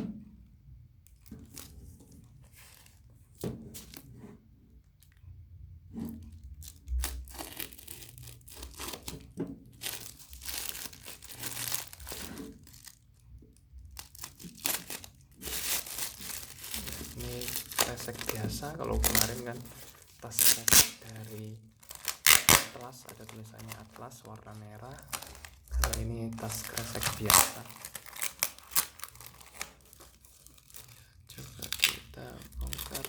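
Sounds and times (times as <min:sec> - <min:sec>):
plastic crinkling: 0:01.1 - 0:03.1, 0:06.2 - 0:33.0
plastic wrapping tearing: 0:06.5 - 0:13.2, 0:13.8 - 0:33.0.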